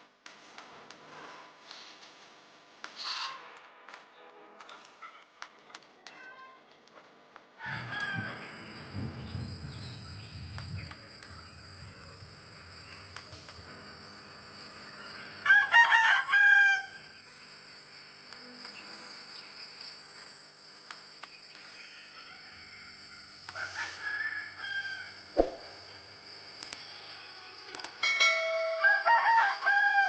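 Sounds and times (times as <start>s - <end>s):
rooster crowing: 7.6s - 9.9s, 15.4s - 17.1s, 22.2s - 25.7s, 28.6s - 30.0s
high insect buzz: 7.8s - 28.0s.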